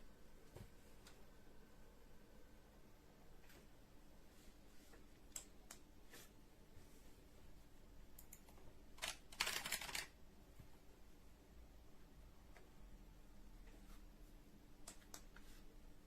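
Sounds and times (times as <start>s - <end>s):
computer keyboard clicking: 8.2s - 10.1s.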